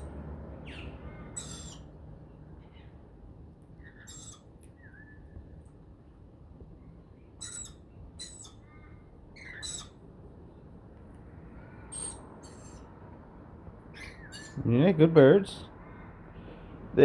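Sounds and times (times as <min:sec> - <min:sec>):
soft bird chirps: 0:00.0 - 0:01.9, 0:03.7 - 0:05.8, 0:06.8 - 0:10.7, 0:11.7 - 0:13.0, 0:13.9 - 0:14.6
lorikeets screeching: 0:00.0 - 0:02.0, 0:03.8 - 0:05.3, 0:07.4 - 0:10.1, 0:11.7 - 0:13.0, 0:13.9 - 0:14.7
low steady background noise: 0:00.0 - 0:17.0.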